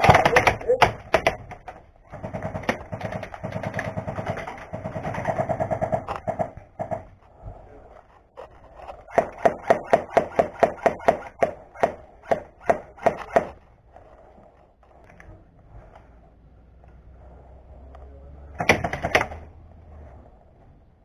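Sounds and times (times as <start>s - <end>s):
airsoft gun firing: 0.0s - 1.4s, 2.1s - 7.1s, 9.1s - 13.6s, 18.6s - 19.5s.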